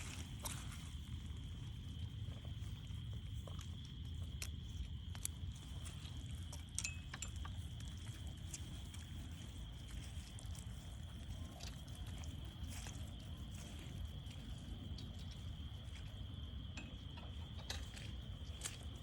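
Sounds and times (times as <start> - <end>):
footsteps on trail: 0.0 - 1.2.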